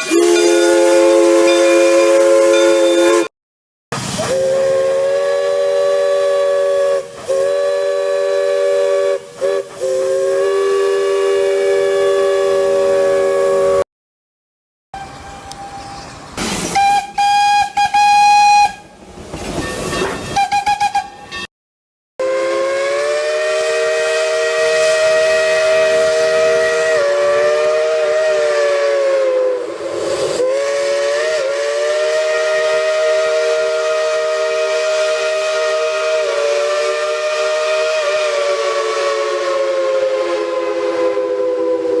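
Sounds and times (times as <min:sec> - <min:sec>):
short steam whistle toots: 0:00.0 - 0:03.3, 0:04.0 - 0:13.8, 0:15.0 - 0:19.0, 0:19.6 - 0:21.5, 0:22.2 - 0:42.0
steam hissing: 0:04.0 - 0:13.8, 0:15.7 - 0:18.3, 0:22.9 - 0:42.0.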